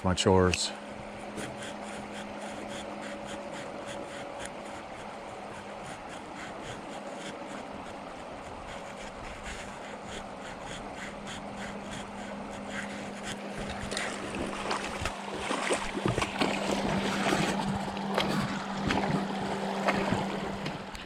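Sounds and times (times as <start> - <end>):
clicks and splashes: 13.6 - 20.8.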